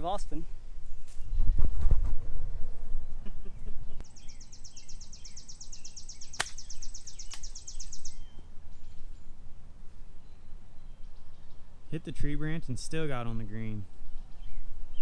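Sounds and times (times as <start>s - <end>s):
falling bird chirps: 4.0s - 9.1s
golf club striking ball: 6.4s - 6.7s.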